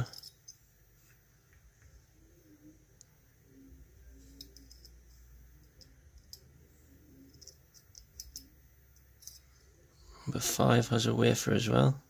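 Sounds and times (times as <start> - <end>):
tiny metal lock parts clicking: 4.3 - 5.0, 7.3 - 9.4.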